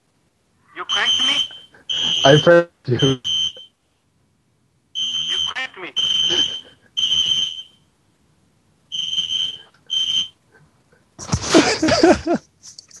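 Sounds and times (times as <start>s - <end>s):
high-pitched alarm beeps: 0.9s - 3.8s, 5.0s - 7.9s, 8.9s - 10.4s.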